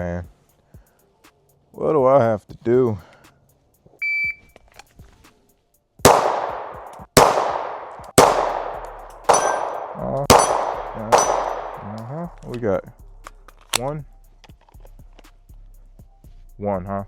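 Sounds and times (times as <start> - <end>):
pistol shots: 6.1 - 12.1
steel targets ringing: 8.5 - 11.9.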